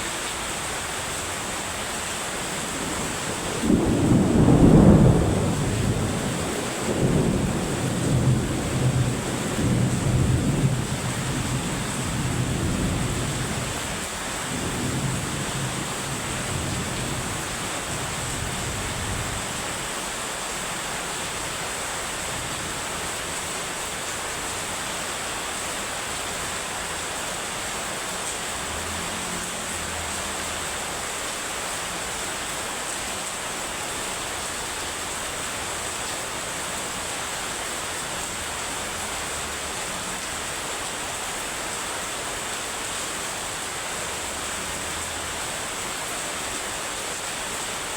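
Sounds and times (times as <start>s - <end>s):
heavy rain hissing: 0.0s - 47.9s
low thunder rumble: 2.7s - 13.8s.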